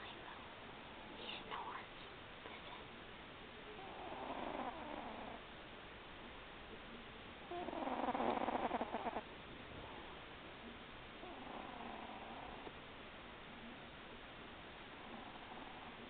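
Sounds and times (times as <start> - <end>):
cat snoring: 3.8 - 5.5, 7.5 - 10.1, 11.2 - 12.7, 15.0 - 16.0.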